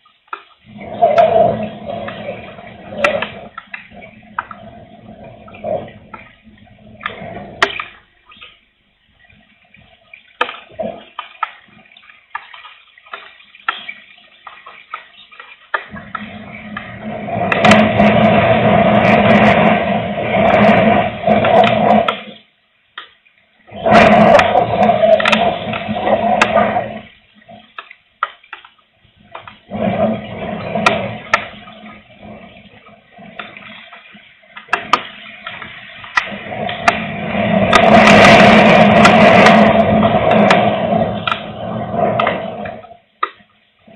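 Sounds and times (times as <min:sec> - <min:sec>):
raindrops tapping: 0:00.0 - 0:43.9
low rumbling noise: 0:00.6 - 0:10.0, 0:15.9 - 0:22.9, 0:23.5 - 0:27.8, 0:29.0 - 0:43.9
wind gusting on microphone: 0:16.2 - 0:22.1, 0:36.3 - 0:42.9.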